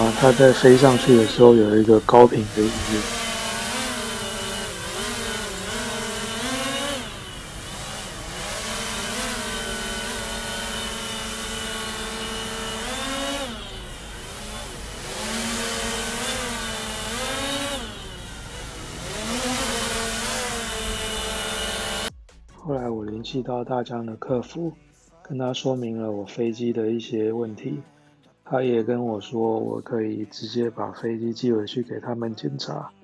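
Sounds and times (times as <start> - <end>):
steady high-pitched tone: 0.0 - 15.1
drone motors and propellers: 0.0 - 22.1.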